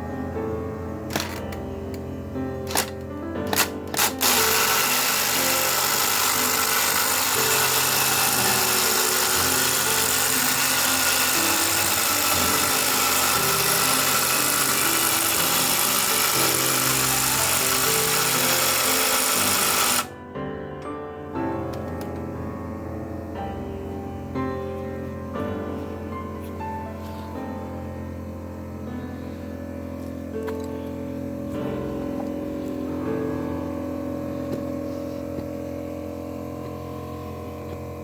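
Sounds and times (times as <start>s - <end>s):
background music: 0.0s - 34.0s
harsh metalworking noise: 0.9s - 20.3s.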